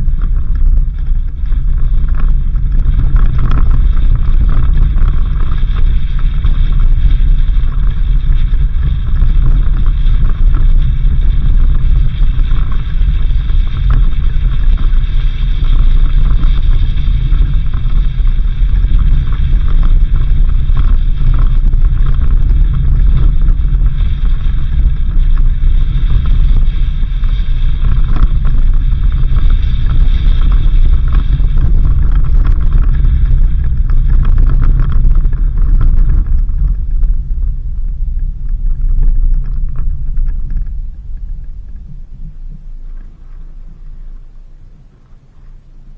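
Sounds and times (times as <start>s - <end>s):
car driving on dirt road: 0.0s - 45.9s
wind against microphone: 0.0s - 45.9s.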